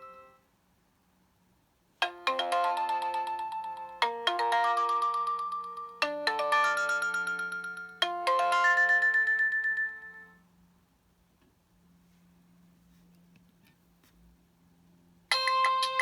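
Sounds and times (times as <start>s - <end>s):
chime-like phone ringtone: 2.0s - 10.4s.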